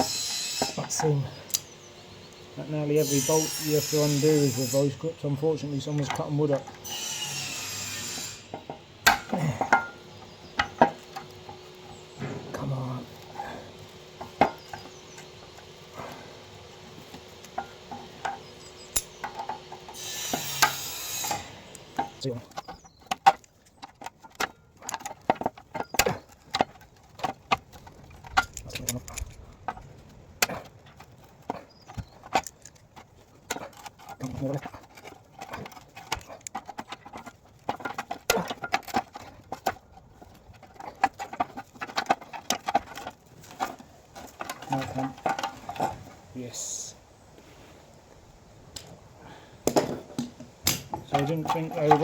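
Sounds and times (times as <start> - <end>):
metal tools clinking and knocking: 3.0 - 13.6, 17.0 - 29.9, 30.9 - 46.9, 49.7 - 52.0
metallic clicks of hand tools: 18.2 - 29.4.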